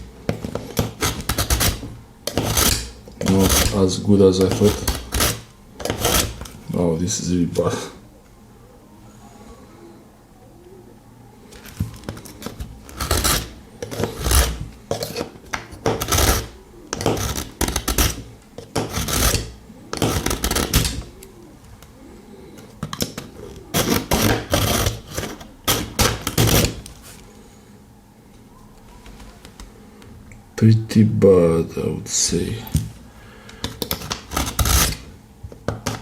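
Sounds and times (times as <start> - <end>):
knife rasping through sharpener: 0.7 - 3.8, 4.4 - 6.5, 12.9 - 18.2, 18.8 - 21.1, 23.8 - 26.8.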